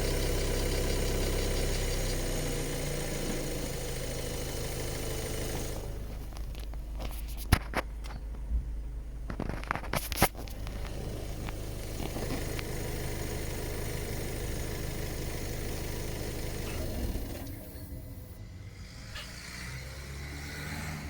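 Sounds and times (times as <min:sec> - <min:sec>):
diesel engine idling: 0:00.0 - 0:07.0, 0:10.3 - 0:18.6.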